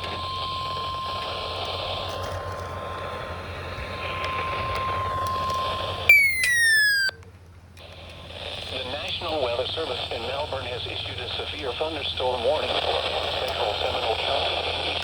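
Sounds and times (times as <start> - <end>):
steady alert tone: 6.1 - 7.1
loud falling tone: 6.1 - 7.2
radio hiss: 8.3 - 15.0.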